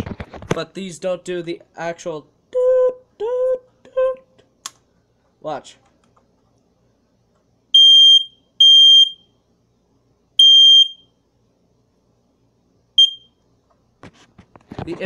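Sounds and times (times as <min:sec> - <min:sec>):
smoke alarm beeping: 0:07.8 - 0:09.3, 0:10.4 - 0:11.2, 0:13.0 - 0:13.4
smoke alarm chirp: 0:07.8 - 0:09.4, 0:10.4 - 0:11.2, 0:13.0 - 0:13.4.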